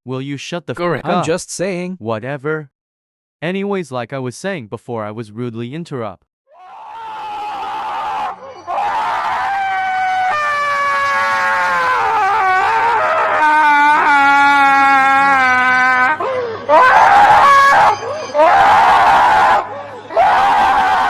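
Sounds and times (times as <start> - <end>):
person screaming: 6.5 - 21.0.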